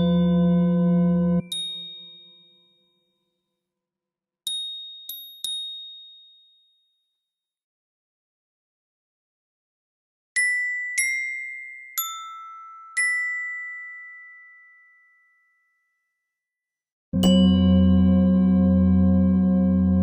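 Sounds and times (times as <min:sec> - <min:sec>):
loud sustained chord: 0:00.0 - 0:01.4, 0:17.2 - 0:20.0
bell-like chime notes: 0:00.0 - 0:03.0, 0:17.2 - 0:20.0.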